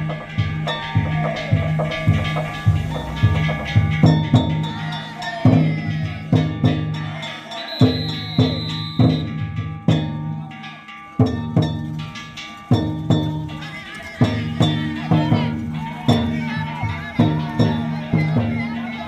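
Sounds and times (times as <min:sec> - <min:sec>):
high held tone: 0:00.0 - 0:09.6
big drum beating: 0:00.0 - 0:19.0
metal bells struck: 0:00.0 - 0:19.0.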